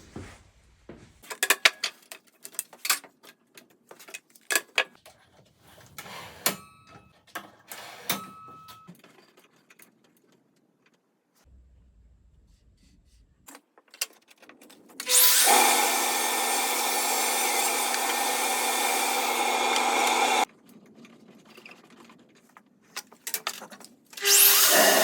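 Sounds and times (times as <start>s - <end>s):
metal parts clicking and clanking: 1.2s - 5.2s, 5.9s - 11.1s, 13.5s - 15.2s, 20.7s - 24.3s.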